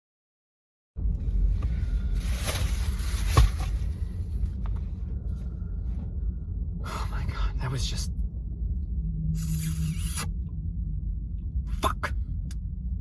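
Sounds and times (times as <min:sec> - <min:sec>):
steady low rumble: 0:01.0 - 0:13.0
faint rustling: 0:01.4 - 0:06.2.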